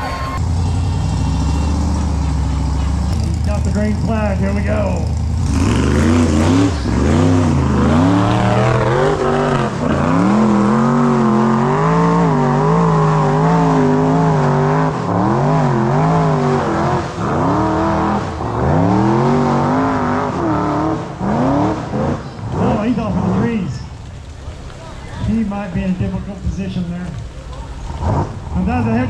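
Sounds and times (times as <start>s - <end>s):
off-road vehicle engine revving hard: 0.0s - 23.8s, 27.7s - 29.0s.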